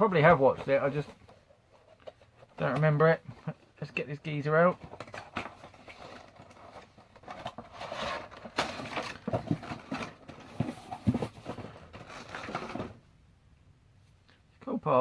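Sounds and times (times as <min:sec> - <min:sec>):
packaging clicks and knocks: 0:04.8 - 0:13.0.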